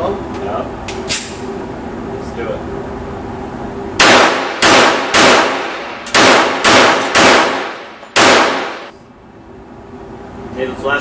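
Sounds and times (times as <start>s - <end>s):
pistol shots with reverberation: 4.0s - 8.9s.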